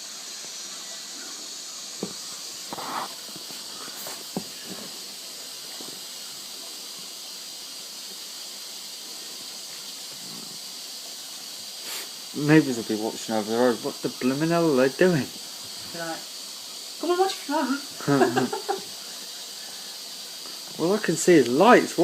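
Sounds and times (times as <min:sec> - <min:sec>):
washing machine hiss: 0:00.0 - 0:22.0.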